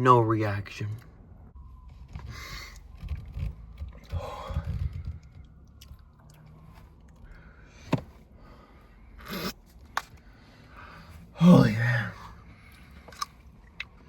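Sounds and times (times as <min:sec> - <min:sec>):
person chewing: 0:05.5 - 0:07.2, 0:12.6 - 0:14.0.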